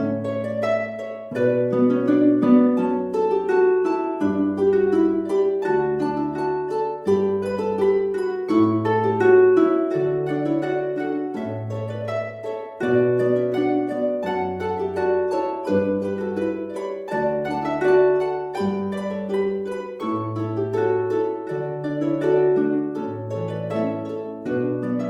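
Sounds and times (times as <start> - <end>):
plucked-string notes: 0.0 - 25.0.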